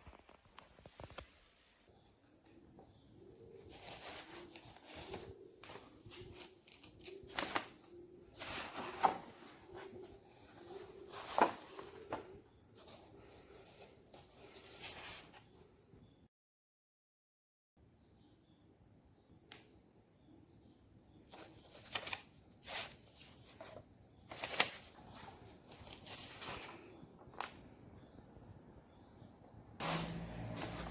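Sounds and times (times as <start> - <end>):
pigeons cooing: 2.6 - 12.4.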